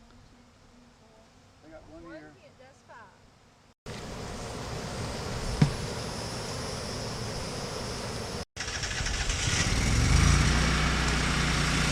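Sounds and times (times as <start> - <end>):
vehicle engine running: 8.6 - 11.9.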